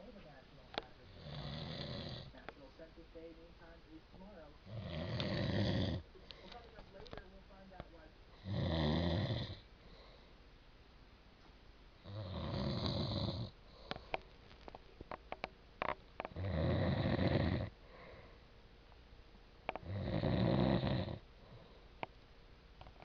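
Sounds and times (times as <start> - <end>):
man snoring: 1.1 - 2.3, 4.7 - 6.0, 8.4 - 9.6, 12.0 - 13.5, 16.3 - 17.7, 19.8 - 21.2.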